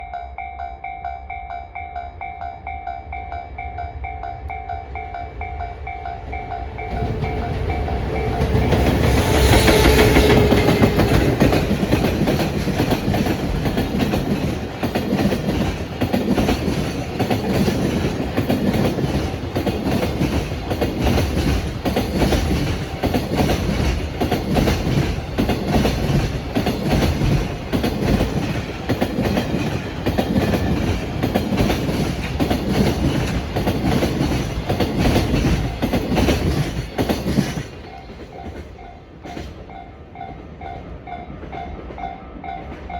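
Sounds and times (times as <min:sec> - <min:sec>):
electric locomotive passing: 0:00.0 - 0:42.9
train wheels clattering over rail joints: 0:06.8 - 0:39.8.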